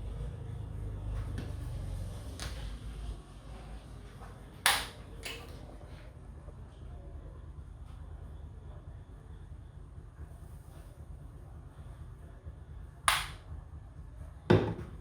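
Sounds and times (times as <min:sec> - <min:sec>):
sharp cracks: 0:04.7 - 0:05.0, 0:13.1 - 0:13.4.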